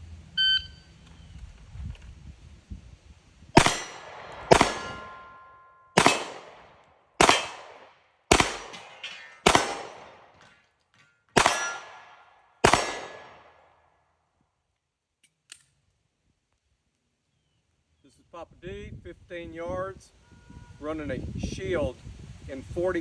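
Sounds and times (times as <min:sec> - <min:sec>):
metallic ring of steel targets: 0:03.6 - 0:07.7, 0:08.3 - 0:13.4
pistol shots: 0:03.6 - 0:10.5, 0:11.4 - 0:13.6.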